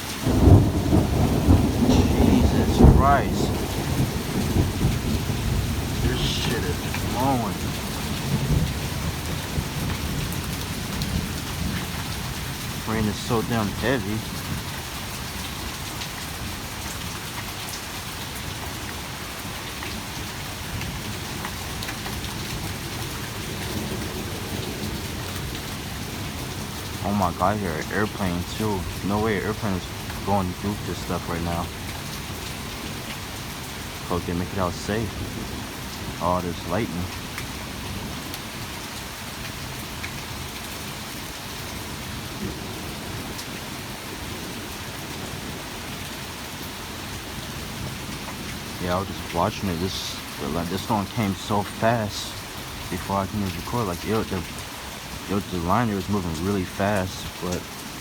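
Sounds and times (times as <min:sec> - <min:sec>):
heavy rain pouring: 0:00.0 - 0:58.0
thunder rumbling: 0:00.2 - 0:14.8.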